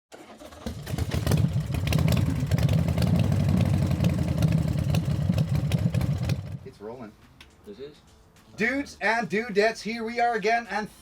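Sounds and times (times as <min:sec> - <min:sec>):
motorcycle engine idling: 0:00.7 - 0:06.6.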